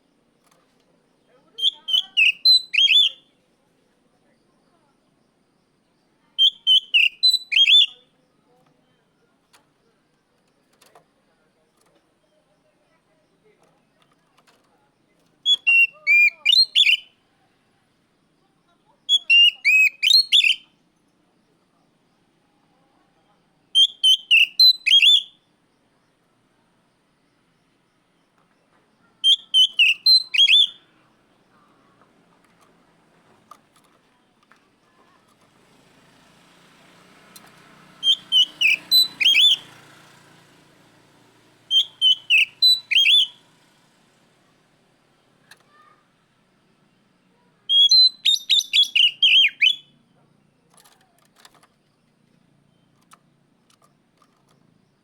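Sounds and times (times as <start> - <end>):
bird singing whistled notes: 1.4 - 3.4, 6.3 - 9.1, 15.4 - 17.2, 19.0 - 20.8, 23.7 - 25.6, 29.2 - 30.9, 38.0 - 39.7, 41.7 - 43.4, 47.6 - 50.2.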